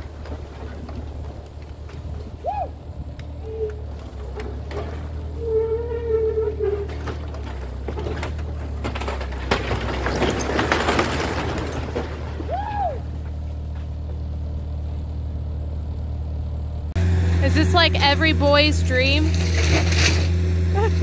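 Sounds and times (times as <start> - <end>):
wood and debris crashing down: 0.0 - 2.4, 3.8 - 5.6, 6.3 - 13.8, 19.2 - 20.8
skid steer engine running: 0.0 - 21.0
brief squeal: 5.4 - 6.9.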